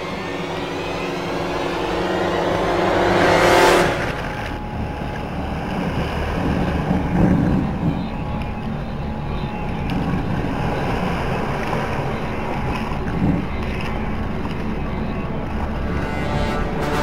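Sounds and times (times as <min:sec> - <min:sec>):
wind buffeting microphone: 0:00.0 - 0:15.8
water washing against boat: 0:04.2 - 0:17.0.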